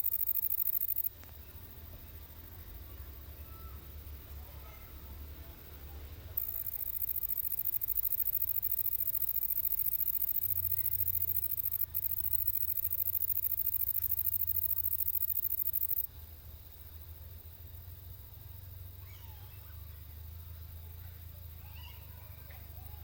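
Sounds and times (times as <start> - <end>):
grasshopper stridulating: 0.0 - 1.8, 6.3 - 16.1.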